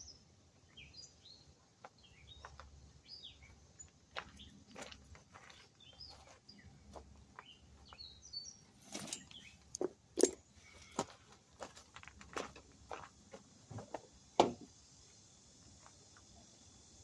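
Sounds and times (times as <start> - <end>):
small birds chirping: 0.0 - 11.2.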